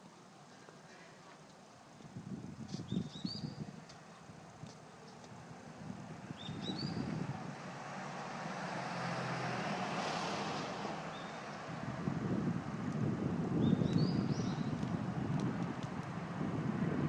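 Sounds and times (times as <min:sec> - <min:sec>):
high rising bird chirps: 0:02.8 - 0:03.6, 0:06.4 - 0:07.1, 0:11.1 - 0:11.4, 0:13.6 - 0:14.8
vehicle passing by: 0:05.5 - 0:13.3.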